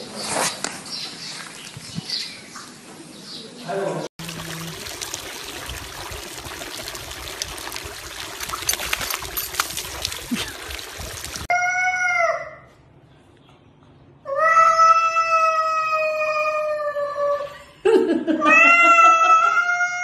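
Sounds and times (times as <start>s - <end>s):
rushing crackling noise: 4.2s - 11.5s.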